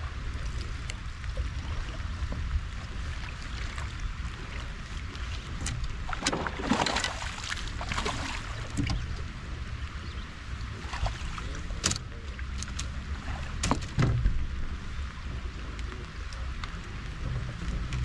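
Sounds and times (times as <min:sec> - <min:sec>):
rain falling on water: 0:00.0 - 0:18.0
wind rumble on microphone: 0:00.0 - 0:18.0
water splash: 0:05.3 - 0:09.2, 0:10.8 - 0:11.9.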